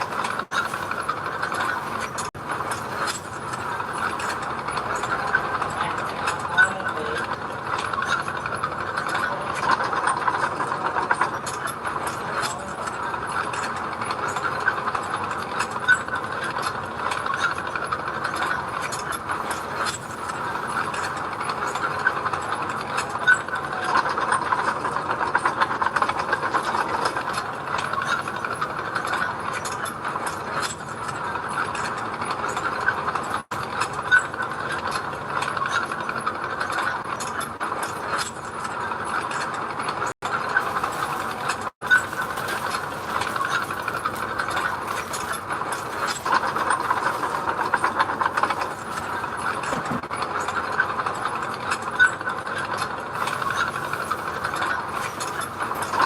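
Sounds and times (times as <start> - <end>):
machinery rattling and clanking: 0.0 - 56.0.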